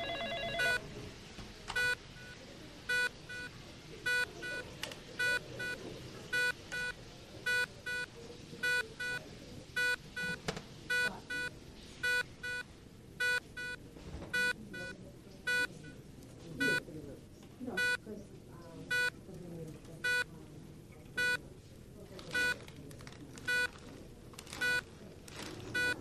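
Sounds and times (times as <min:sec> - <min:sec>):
telephone ringing double beep: 0:00.0 - 0:00.8
low background murmur: 0:00.0 - 0:26.0.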